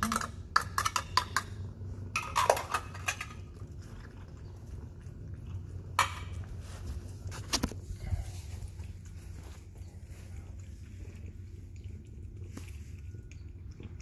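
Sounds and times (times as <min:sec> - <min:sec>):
cat chewing food: 0:03.4 - 0:14.0.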